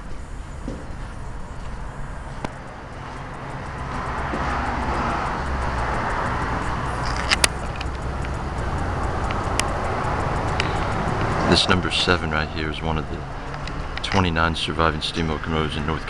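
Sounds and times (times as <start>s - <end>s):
sharp clicks: 0.0s - 15.4s
passing car engine and tyres: 0.0s - 16.0s.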